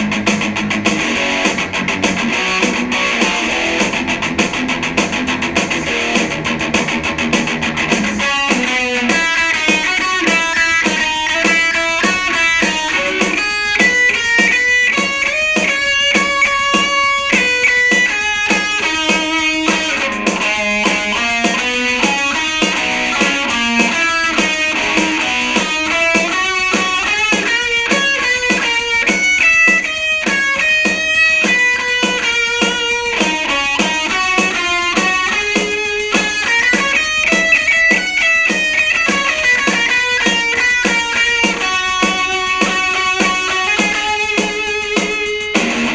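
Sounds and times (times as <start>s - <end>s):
electric guitar playing quick notes: 0.0s - 45.9s.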